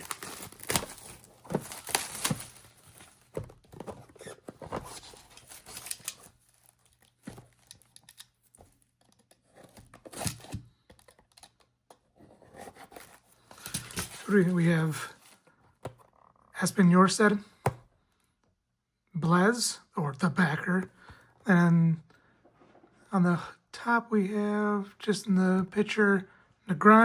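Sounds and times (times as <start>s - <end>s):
packaging tearing and crinkling: 0.0s - 8.8s, 9.7s - 10.6s.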